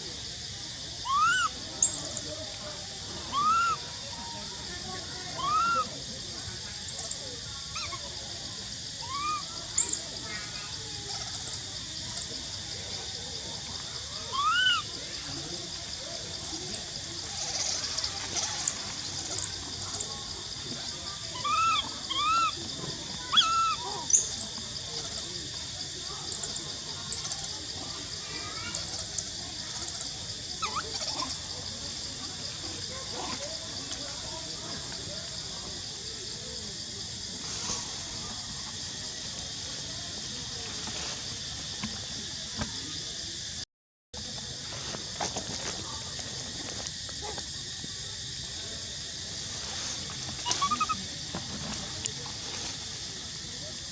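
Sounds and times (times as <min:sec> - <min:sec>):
high-pitched outdoor hiss: 0:00.0 - 0:43.6, 0:44.2 - 0:53.9
baby monkey crying: 0:01.1 - 0:02.2, 0:03.3 - 0:03.8, 0:05.4 - 0:05.8, 0:14.3 - 0:15.5, 0:21.4 - 0:22.6, 0:23.3 - 0:25.2, 0:50.4 - 0:51.0
high-pitched hiss: 0:23.6 - 0:43.5.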